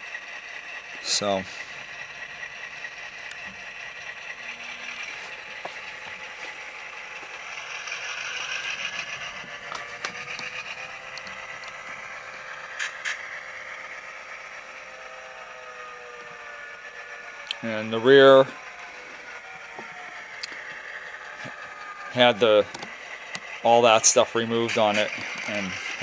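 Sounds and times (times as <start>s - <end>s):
diesel engine through small speaker: 0.0s - 26.0s
sharp mechanism clicks: 7.4s - 11.8s, 12.8s - 13.4s, 21.5s - 23.6s.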